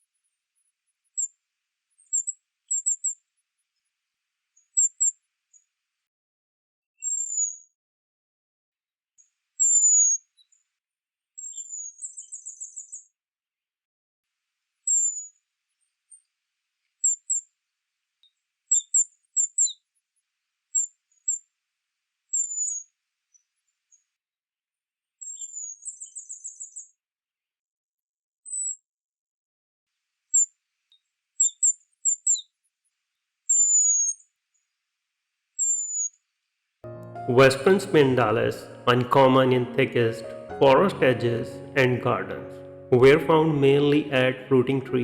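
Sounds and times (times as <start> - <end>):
bird whistles and chip notes: 35.6 - 36.1.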